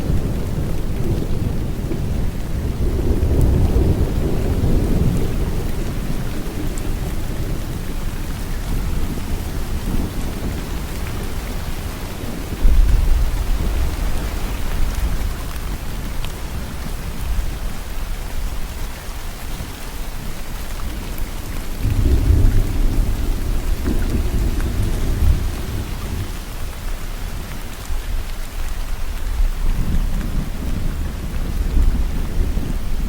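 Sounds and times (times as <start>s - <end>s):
rolling thunder: 0.0s - 15.9s, 21.0s - 26.6s, 29.3s - 33.0s
steady rainfall: 0.0s - 33.0s.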